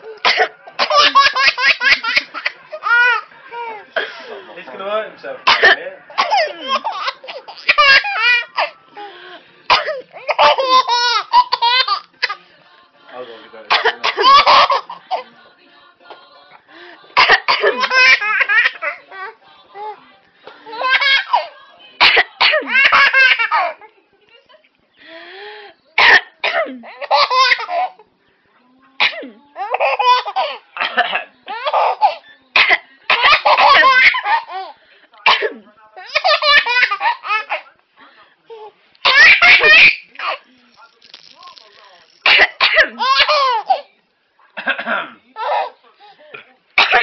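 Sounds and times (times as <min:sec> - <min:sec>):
baby laughing: 0:00.8 - 0:03.8, 0:06.2 - 0:08.7, 0:10.2 - 0:12.4, 0:14.0 - 0:15.2, 0:17.5 - 0:19.9, 0:20.7 - 0:21.5, 0:26.9 - 0:28.0, 0:29.6 - 0:30.6, 0:33.1 - 0:34.7, 0:36.1 - 0:37.6, 0:38.5 - 0:40.4, 0:43.0 - 0:43.9
baby giggling: 0:06.2 - 0:08.7, 0:10.2 - 0:12.4, 0:17.6 - 0:19.3, 0:43.0 - 0:43.9.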